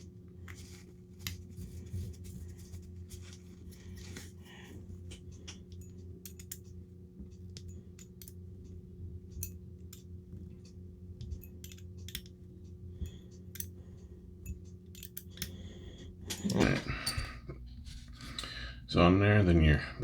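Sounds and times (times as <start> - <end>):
steady low hum: 0.0 - 20.0
small metal parts and tools clicking: 5.4 - 6.8, 7.5 - 8.4, 9.3 - 10.1, 11.2 - 12.4, 13.1 - 13.7, 14.4 - 15.6.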